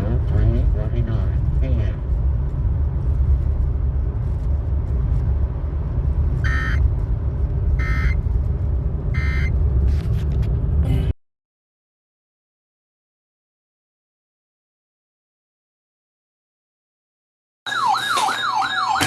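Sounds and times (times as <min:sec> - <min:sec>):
loud low rumble: 0:00.0 - 0:11.2.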